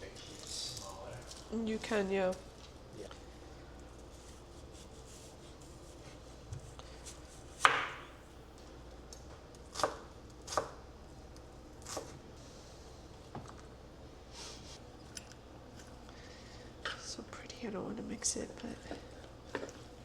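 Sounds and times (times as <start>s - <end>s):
knife chopping on cutting board: 6.5s - 8.1s, 9.7s - 10.8s, 11.8s - 12.2s.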